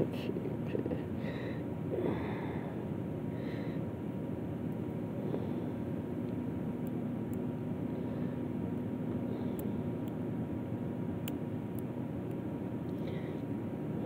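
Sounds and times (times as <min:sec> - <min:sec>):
low background hum: 0:00.0 - 0:14.0.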